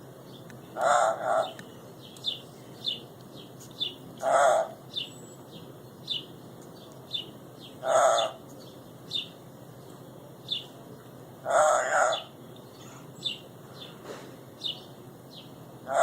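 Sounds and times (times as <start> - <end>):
parrot harsh calls: 0.8 - 1.6, 4.2 - 4.8, 7.8 - 8.4, 11.4 - 12.4.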